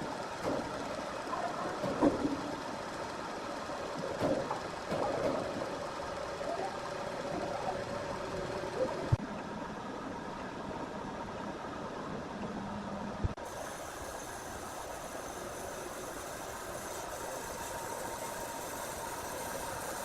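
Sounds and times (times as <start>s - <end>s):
sawmill machinery whine: 0.0s - 9.2s, 13.4s - 20.0s.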